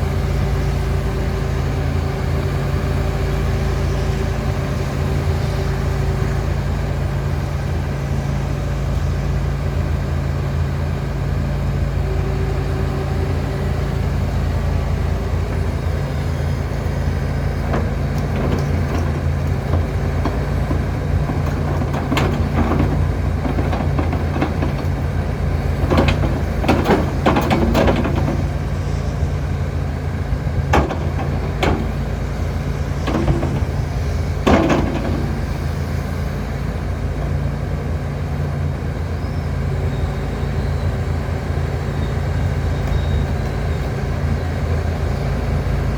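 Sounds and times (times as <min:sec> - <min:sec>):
excavator diesel engine running: 0:00.0 - 0:45.9
trees knocking in metal bin: 0:17.5 - 0:29.1, 0:30.5 - 0:36.1.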